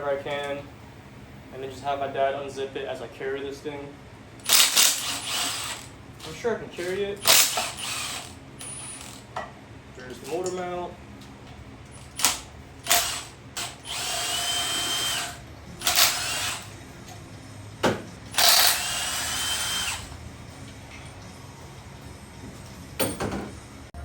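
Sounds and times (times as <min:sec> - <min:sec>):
cordless power tool whirring: 0:04.4 - 0:05.9, 0:07.2 - 0:09.2, 0:12.0 - 0:16.7, 0:18.3 - 0:20.2.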